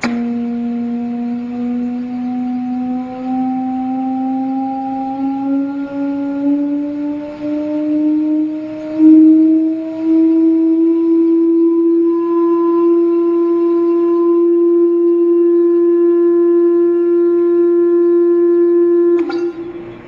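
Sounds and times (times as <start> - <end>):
click: 0.0 - 0.4, 19.2 - 19.5
steady electronic tone: 0.0 - 20.0.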